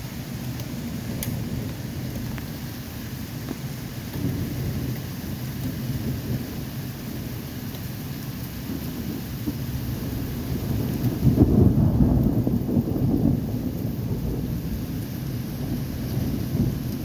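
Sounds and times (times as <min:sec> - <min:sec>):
distant thunder rumbling: 0:00.0 - 0:07.6, 0:08.6 - 0:17.0
rain falling: 0:00.0 - 0:17.0.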